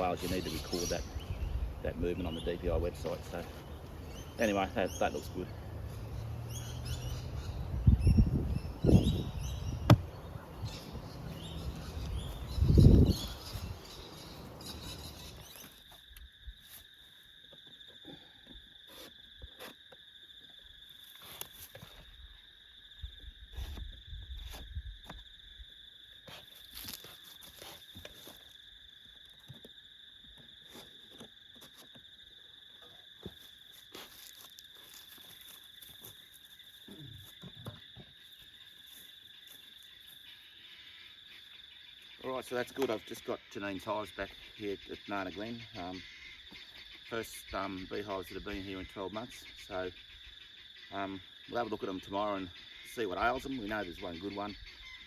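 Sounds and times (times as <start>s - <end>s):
insect chorus trilling: 0.0s - 55.0s
loud low thump: 9.8s - 10.2s.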